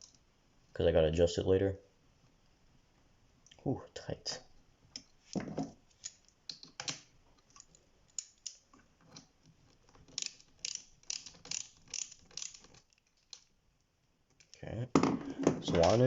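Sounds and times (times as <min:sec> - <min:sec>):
metallic clicks of hand tool: 0:10.1 - 0:13.5.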